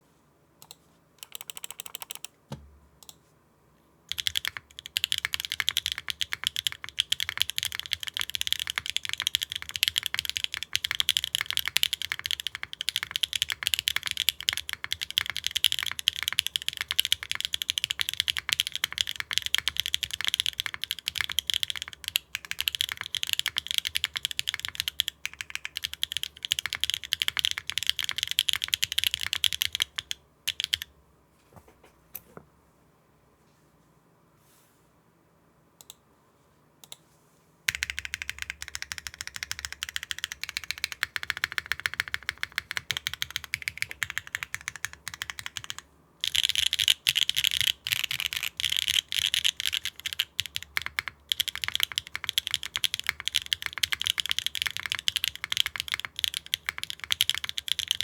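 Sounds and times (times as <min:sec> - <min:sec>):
mechanical keyboard typing: 0:00.6 - 0:02.3, 0:04.1 - 0:30.9, 0:37.7 - 0:58.0.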